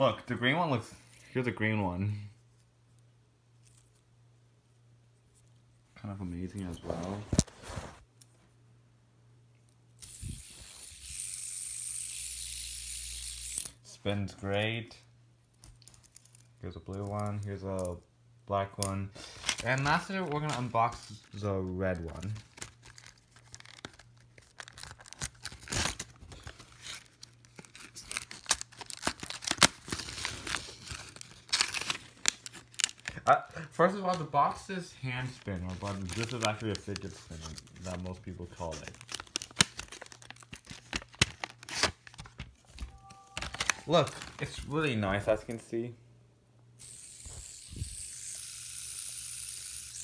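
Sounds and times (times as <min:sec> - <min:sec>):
fidget spinner whirring: 0:10.0 - 0:13.8, 0:46.8 - 0:50.0
packaging tearing and rustling: 0:19.2 - 0:34.3, 0:35.2 - 0:44.8.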